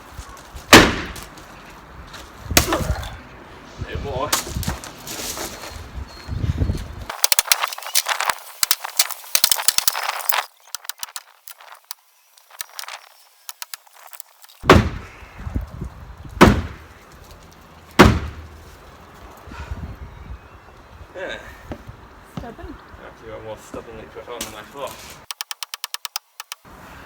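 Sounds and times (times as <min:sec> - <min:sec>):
sledgehammer blows on wood: 0:00.7 - 0:01.4, 0:02.5 - 0:03.2, 0:14.6 - 0:15.2, 0:16.3 - 0:16.9, 0:18.0 - 0:18.6
rapid crackling and snapping: 0:07.1 - 0:15.0, 0:24.4 - 0:26.6.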